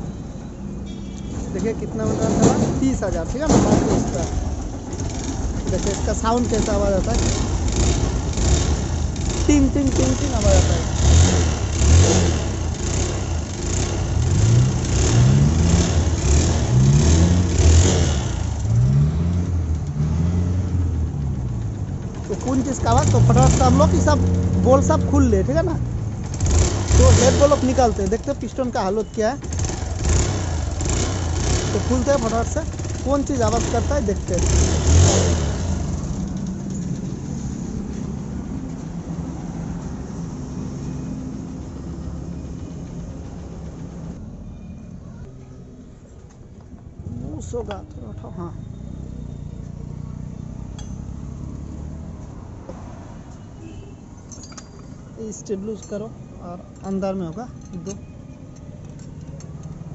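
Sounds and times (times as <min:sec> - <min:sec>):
motorcycle engine revving: 0:02.0 - 0:44.2, 0:46.9 - 0:47.8
metallic ting noise: 0:50.7 - 0:51.4, 0:53.7 - 0:59.2.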